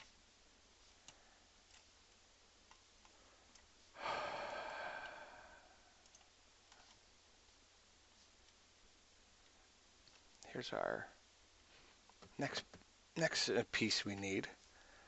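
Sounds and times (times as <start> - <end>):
faint mouse clicks: 0.8 - 3.7, 6.0 - 7.1, 9.4 - 10.5
person sighing: 4.0 - 6.0.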